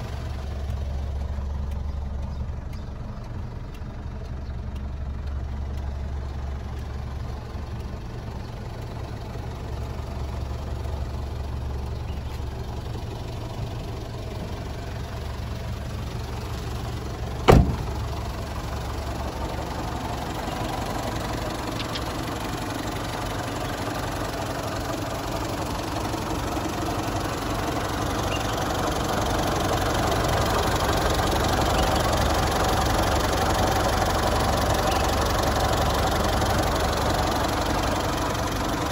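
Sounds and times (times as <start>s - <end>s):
diesel engine idling: 0.0s - 38.9s
sharp thump: 17.5s - 18.0s.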